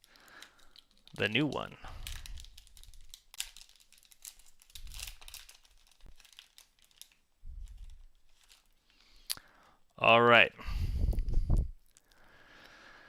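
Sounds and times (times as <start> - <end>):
plastic wrapper crinkling and tearing: 0.0 - 9.4.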